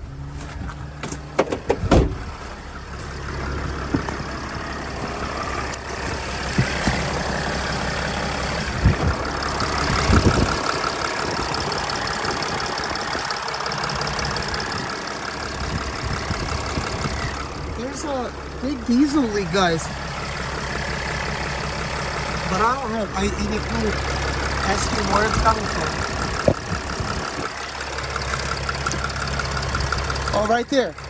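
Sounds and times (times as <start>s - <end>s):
diesel engine idling: 0.0s - 31.0s
sharp engine knocks: 1.0s - 2.4s, 3.0s - 4.7s, 5.7s - 7.4s.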